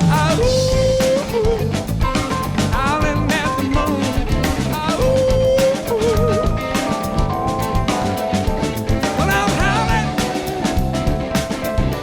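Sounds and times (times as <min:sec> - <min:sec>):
lead guitar with vibrato: 0:00.0 - 0:12.0
live blues-rock band: 0:00.0 - 0:12.0.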